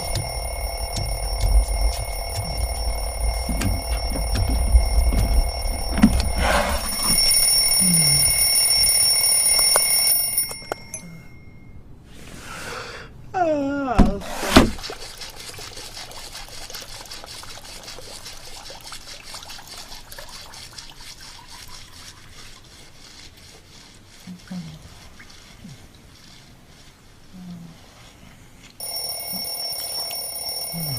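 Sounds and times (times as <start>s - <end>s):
cartoon alarm clock ringing: 0.0s - 11.6s, 28.8s - 30.9s.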